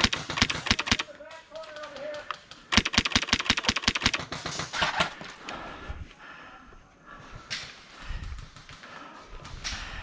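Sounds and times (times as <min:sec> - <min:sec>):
airsoft rifle full-auto burst: 0:00.0 - 0:01.1, 0:02.7 - 0:05.0.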